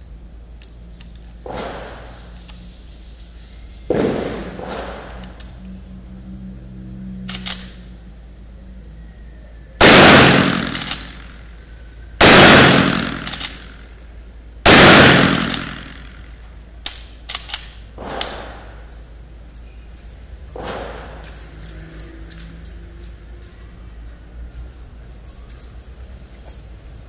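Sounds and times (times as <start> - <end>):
rifle shots ringing: 3.9 - 5.2, 9.8 - 11.4, 12.2 - 13.9, 14.7 - 16.3
short clicks: 7.2 - 7.8.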